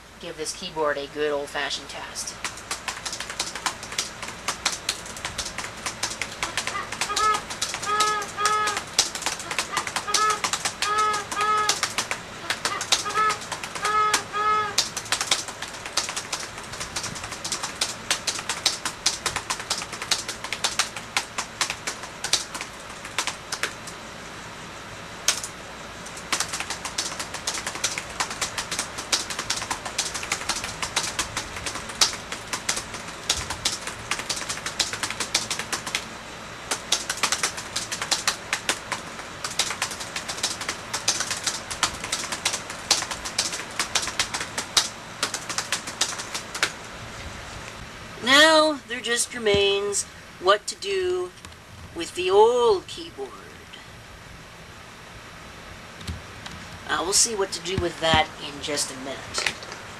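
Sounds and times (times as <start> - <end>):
fast typing on laptop keyboard: 2.3 - 24.0, 25.3 - 36.1, 36.7 - 46.8.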